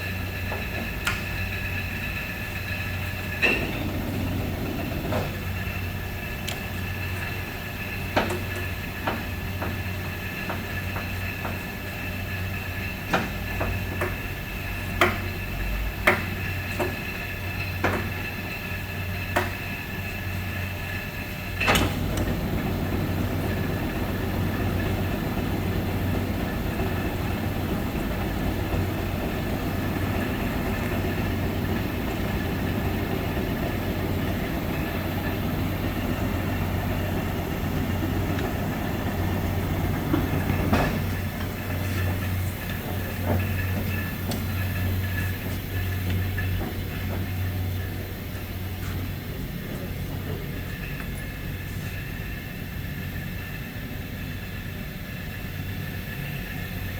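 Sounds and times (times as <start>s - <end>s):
lathe running with steady hum: 0.0s - 56.9s
sharp clicks and clunks: 3.3s - 5.4s
loud clunk: 3.4s - 4.4s.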